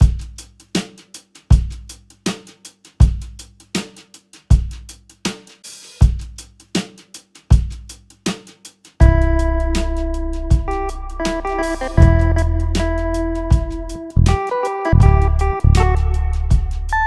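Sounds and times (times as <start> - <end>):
bass drum: 0.0 - 0.5, 1.5 - 2.0, 3.0 - 3.5, 9.0 - 17.0
hi-hat ticks: 0.0 - 17.0
snare drum: 0.0 - 17.0
cymbal wash: 9.0 - 17.0.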